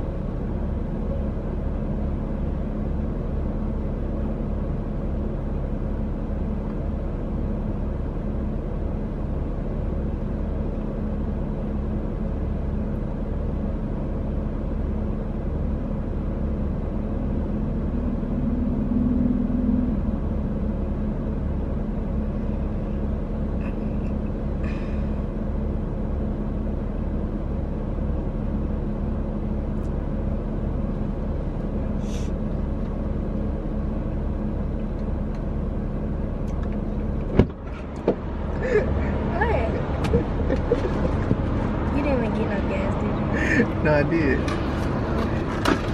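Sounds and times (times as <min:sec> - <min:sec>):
car cabin road rumble: 0:00.0 - 0:45.9.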